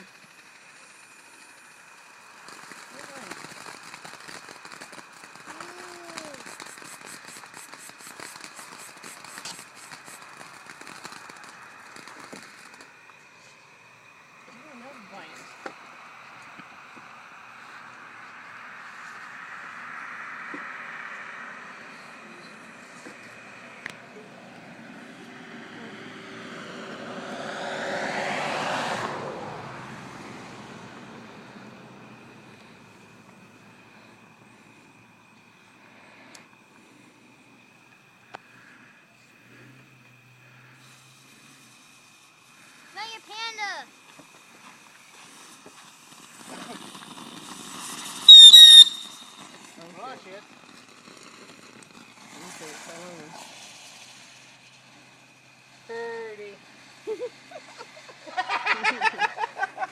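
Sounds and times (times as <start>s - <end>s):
firework crackling: 0.0s - 59.9s
vehicle passing by: 14.1s - 35.2s, 38.5s - 42.0s, 52.1s - 59.9s.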